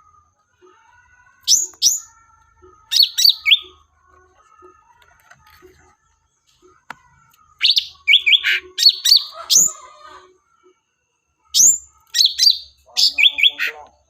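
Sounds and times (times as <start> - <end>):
bird chirps and whistles: 7.6 - 9.8, 11.6 - 13.8.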